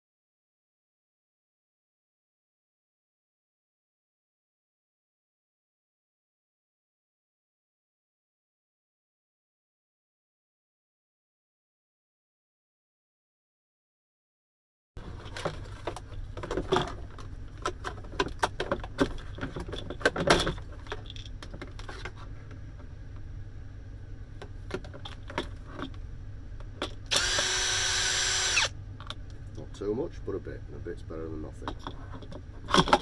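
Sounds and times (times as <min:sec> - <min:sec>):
power drill running: 0:27.1 - 0:28.7.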